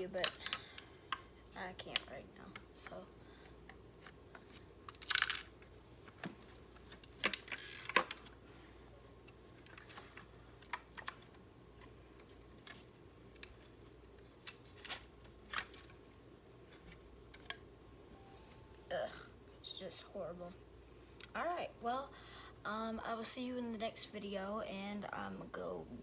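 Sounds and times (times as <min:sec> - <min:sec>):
plastic parts clicking and knocking: 0:00.1 - 0:03.0, 0:03.7 - 0:08.4, 0:09.2 - 0:17.7.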